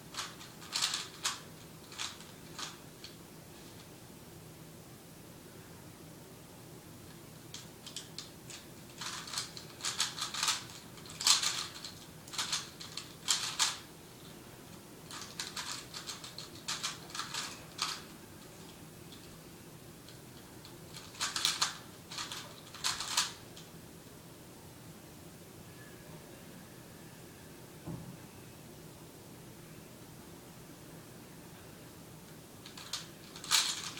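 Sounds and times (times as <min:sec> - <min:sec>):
puzzle cube clicking as turned: 0:00.1 - 0:02.7, 0:07.6 - 0:13.8, 0:15.1 - 0:18.0, 0:21.0 - 0:23.4, 0:32.6 - 0:33.9.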